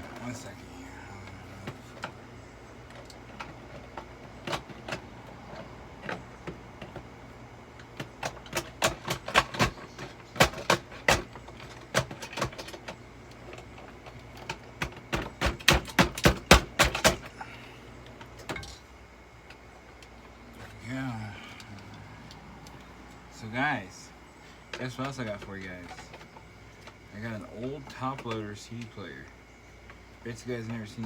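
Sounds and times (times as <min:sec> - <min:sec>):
hard objects knocking and clattering: 0:07.8 - 0:17.3.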